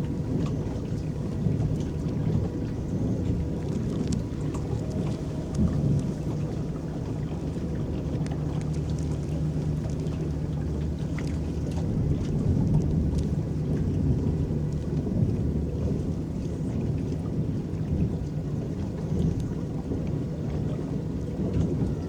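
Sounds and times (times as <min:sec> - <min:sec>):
electric boat motor hum: 0:00.0 - 0:16.3
water splashing along hull: 0:00.0 - 0:22.0
water drips: 0:01.7 - 0:15.3.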